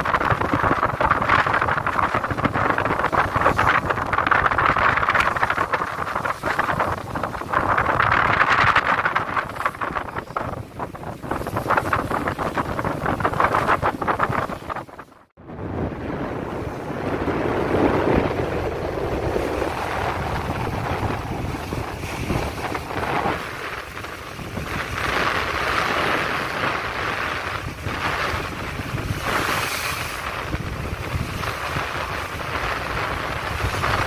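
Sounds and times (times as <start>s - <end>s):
sea waves: 0.0s - 34.0s
strong wind on microphone: 0.0s - 34.0s.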